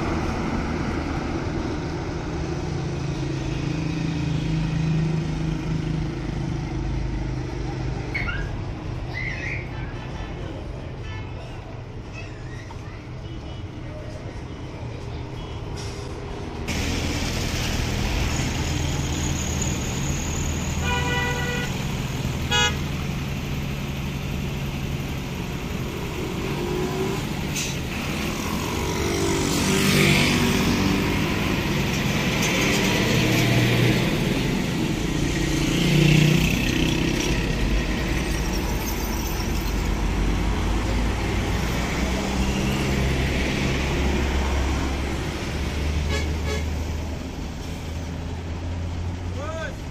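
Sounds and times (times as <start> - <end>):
street traffic: 0.0 - 49.9
bus diesel engine running: 11.6 - 49.9
horn blasts: 20.8 - 21.7, 22.5 - 22.8.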